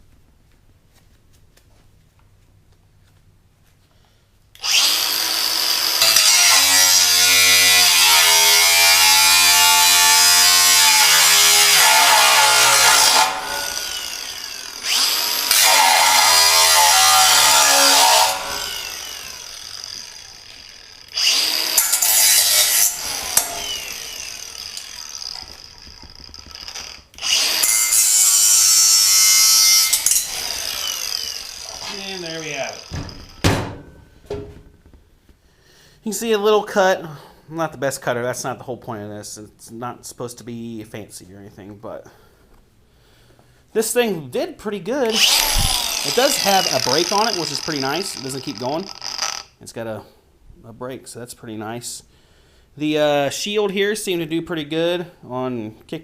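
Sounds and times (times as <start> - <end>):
angle grinder cutting metal: 4.6 - 33.6, 45.0 - 49.6.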